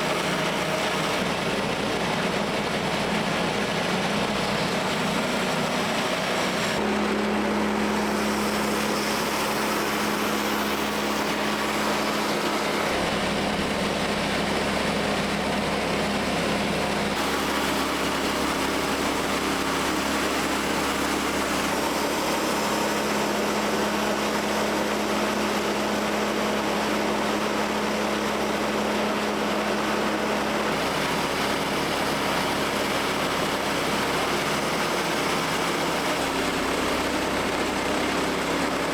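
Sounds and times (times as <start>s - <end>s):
sawmill engine running: 0.0s - 38.9s.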